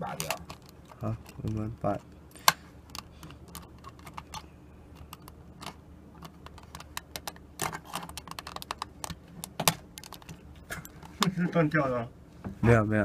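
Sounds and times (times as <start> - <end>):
small parts clicking and tapping: 0.0 - 11.4.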